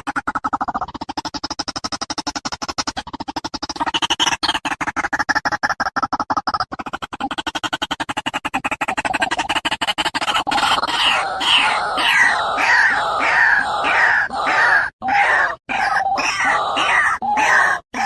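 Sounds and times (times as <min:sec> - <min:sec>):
bird harsh croaking calls: 0:07.2 - 0:18.0
bird fast pulsing call: 0:10.2 - 0:18.0.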